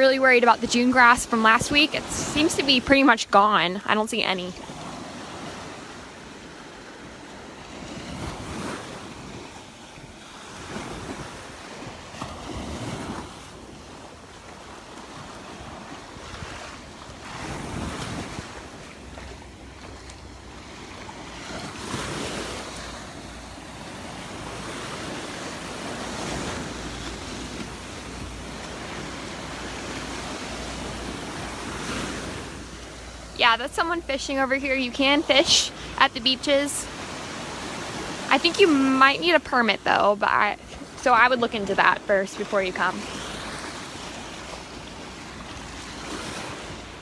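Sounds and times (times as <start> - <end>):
small waves breaking on sand: 0.0 - 47.0.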